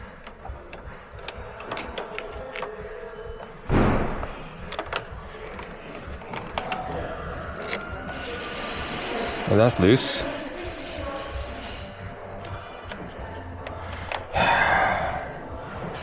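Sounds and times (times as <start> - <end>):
clicks and knocks on battery terminals: 0.2 - 2.9
loud thud: 3.7 - 4.4.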